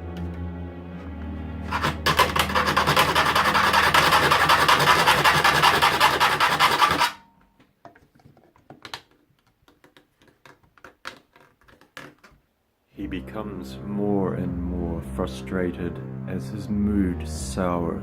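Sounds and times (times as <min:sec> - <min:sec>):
abrasive tool scraping wood: 0:01.7 - 0:07.2
handling clicks and taps: 0:07.8 - 0:12.4.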